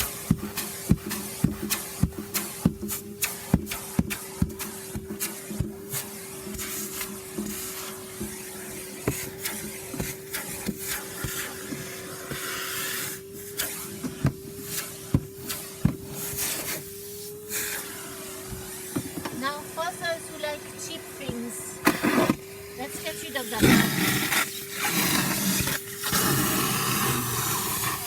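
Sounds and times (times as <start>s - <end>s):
vacuum cleaner motor whine: 0.0s - 28.0s.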